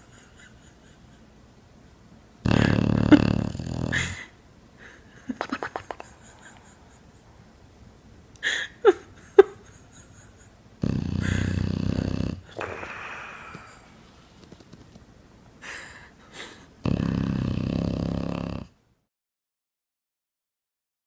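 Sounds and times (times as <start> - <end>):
loud snoring: 2.4 - 4.2, 10.8 - 13.7, 16.8 - 18.8.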